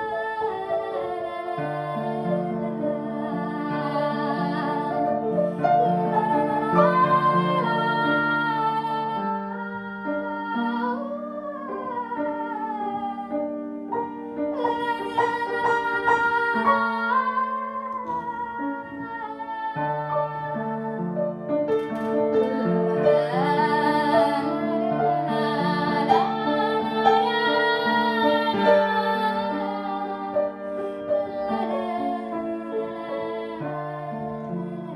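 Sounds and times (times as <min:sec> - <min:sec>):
cello playing: 0:00.0 - 0:34.9
piano chords: 0:00.0 - 0:34.9
woman singing: 0:00.0 - 0:34.9.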